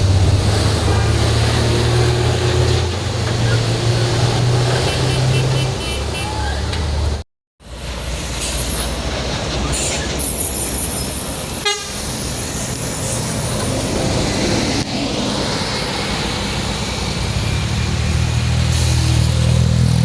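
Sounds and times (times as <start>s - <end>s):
heavy truck engines climbing: 0.0s - 20.0s
vehicle horn tooting: 4.8s - 6.5s, 11.6s - 12.0s.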